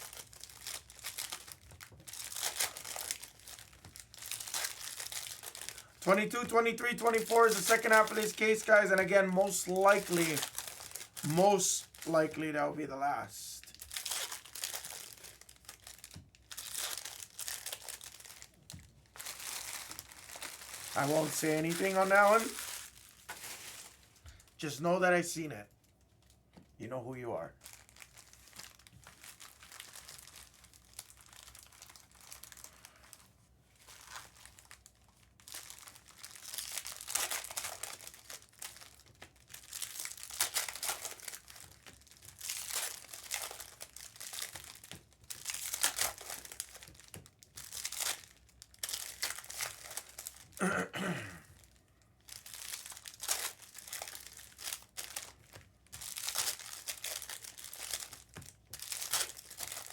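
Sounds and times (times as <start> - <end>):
foil wrappers crinkling: 0.0 - 12.6, 13.5 - 24.7, 27.6 - 59.9
person coughing: 50.6 - 51.6.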